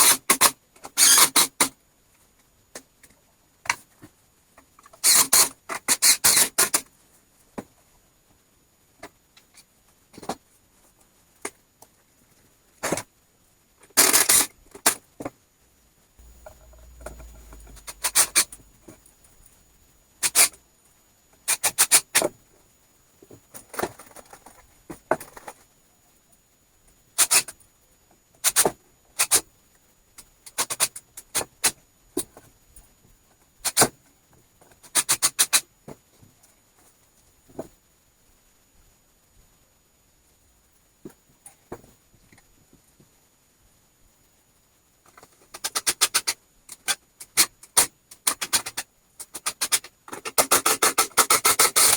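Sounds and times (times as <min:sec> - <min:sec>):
faint low hum: 0:15.6 - 0:21.4.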